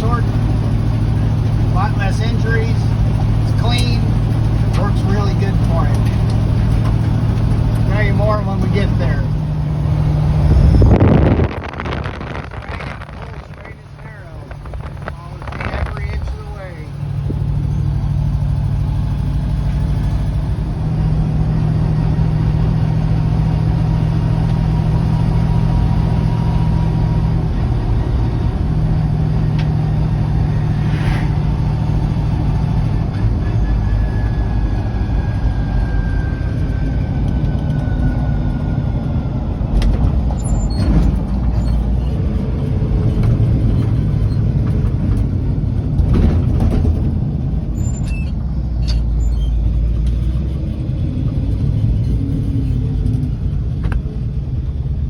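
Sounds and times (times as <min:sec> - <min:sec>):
road noise: 0:00.0 - 0:55.0
truck engine droning: 0:00.0 - 0:55.0
sharp knocks and rattles: 0:39.7 - 0:49.2.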